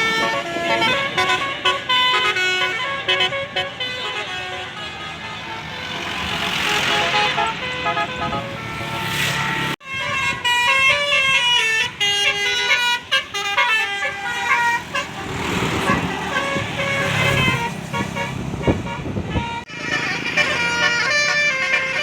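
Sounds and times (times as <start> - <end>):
bus horn playing a melody: 0.0 - 22.0
rushing noise: 8.3 - 9.8.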